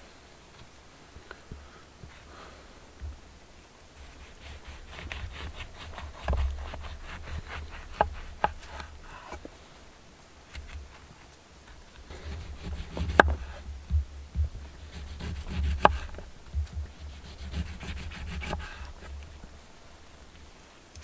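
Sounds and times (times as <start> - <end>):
rubbing and handling noises: 3.9 - 9.8, 10.4 - 20.6
low rumble: 12.1 - 15.2.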